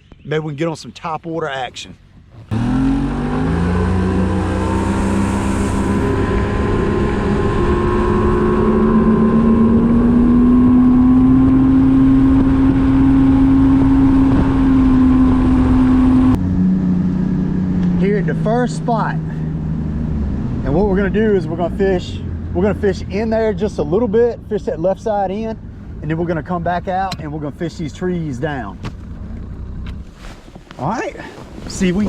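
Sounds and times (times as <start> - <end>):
outboard motor running: 2.5 - 20.1.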